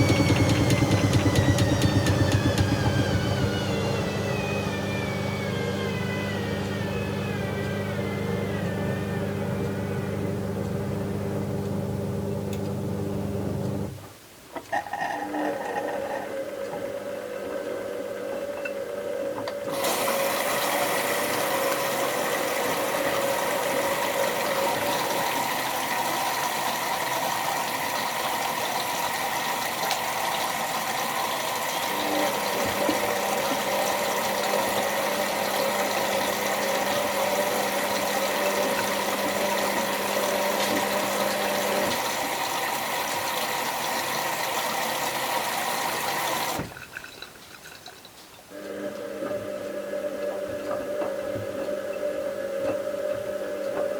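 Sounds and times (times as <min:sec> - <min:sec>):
washing machine rushing noise: 0:00.0 - 0:14.0, 0:19.7 - 0:46.9.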